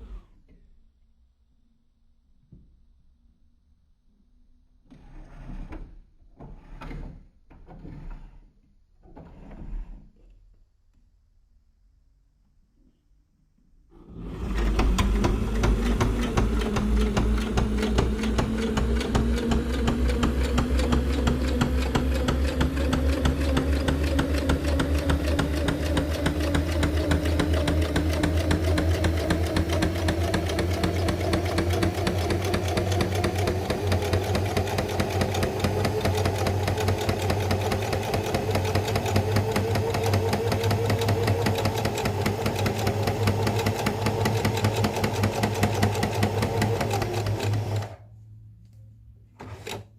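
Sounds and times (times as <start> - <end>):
electric sewing machine running: 13.9 - 48.0.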